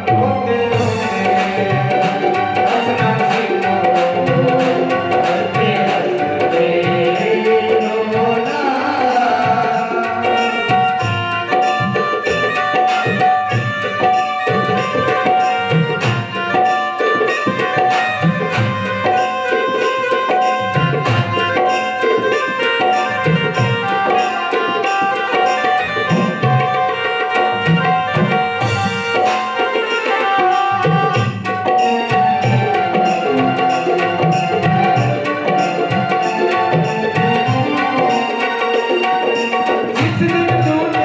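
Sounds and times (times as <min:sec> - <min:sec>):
held melodic instrument notes: 0:00.0 - 0:41.0
tabla playing fast rhythm: 0:00.0 - 0:41.0.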